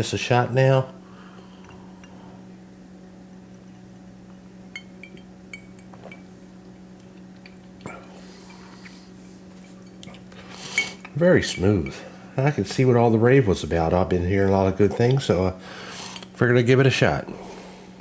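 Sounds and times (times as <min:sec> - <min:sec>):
steady low hum: 0:00.0 - 0:18.0
person sipping drink: 0:07.0 - 0:11.1, 0:15.8 - 0:16.4.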